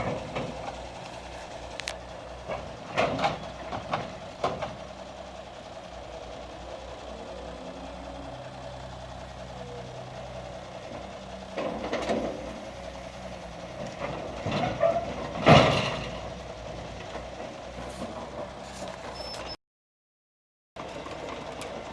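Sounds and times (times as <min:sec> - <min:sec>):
diesel engine running: 0:00.0 - 0:19.6, 0:20.8 - 0:21.9
heavy metal clunks: 0:13.7 - 0:16.3.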